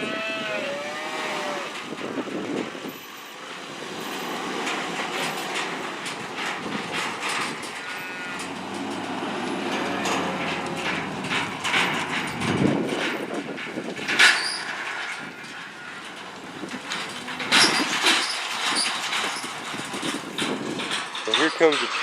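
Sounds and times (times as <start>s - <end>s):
metal trailer clanking and rattling: 0.9s - 22.0s
vehicle engine running: 1.8s - 14.2s.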